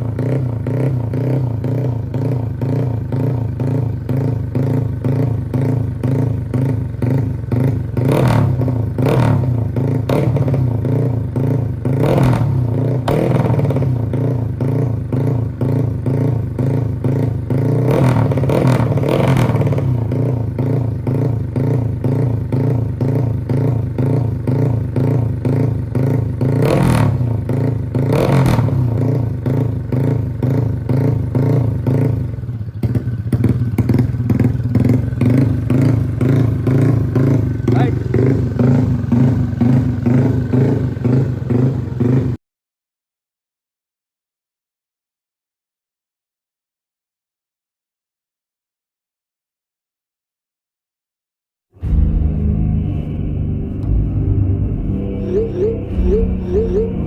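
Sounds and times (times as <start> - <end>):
motorcycle engine idling: 0.0 - 42.4
throttle blips: 54.9 - 57.0.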